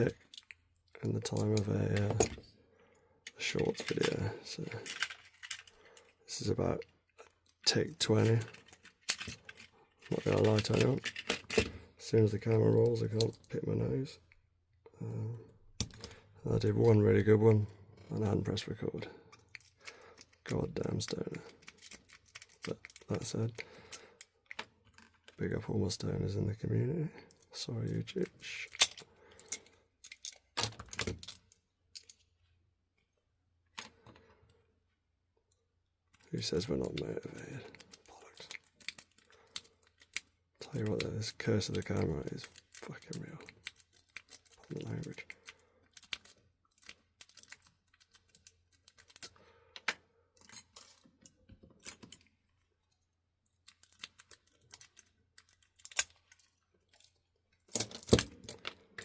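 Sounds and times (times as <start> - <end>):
lock picks clicking in padlock: 53.6 - 56.4.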